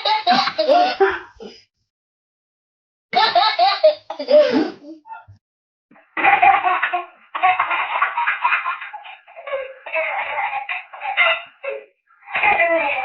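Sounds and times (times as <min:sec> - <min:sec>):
baby laughing: 0:00.0 - 0:01.2, 0:03.2 - 0:04.8, 0:06.1 - 0:13.0.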